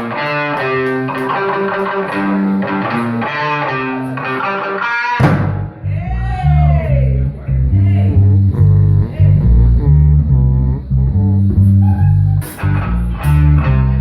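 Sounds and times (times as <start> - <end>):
electric guitar melody: 0.0 - 14.0
drums: 5.2 - 5.9
bass notes: 5.2 - 14.0.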